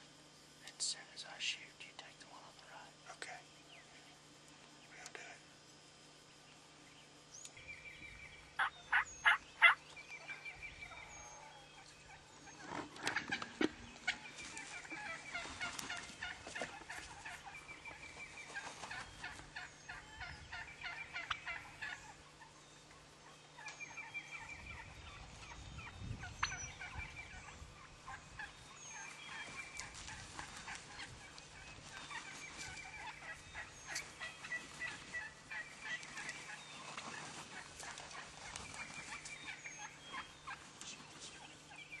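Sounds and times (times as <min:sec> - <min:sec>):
turkeys gobbling: 0:08.6 - 0:40.7.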